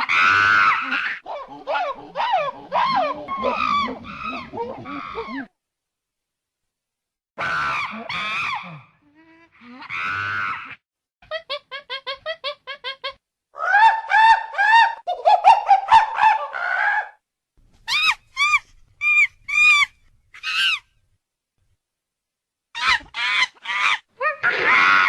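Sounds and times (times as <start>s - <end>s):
monkey rising-and-falling calls: 0.0s - 5.5s, 13.6s - 17.2s, 17.9s - 20.8s
monkey screeching calls: 0.0s - 5.5s, 17.9s - 20.8s, 22.8s - 25.0s.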